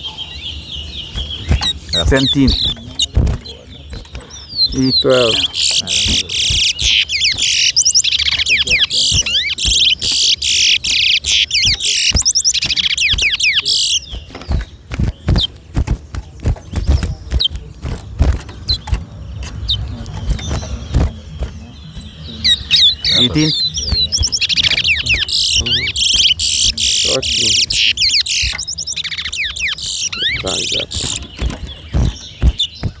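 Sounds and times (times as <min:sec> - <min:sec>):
finch singing whistled notes: 0:00.0 - 0:33.0
sharp knocks: 0:01.1 - 0:22.2, 0:29.8 - 0:33.0.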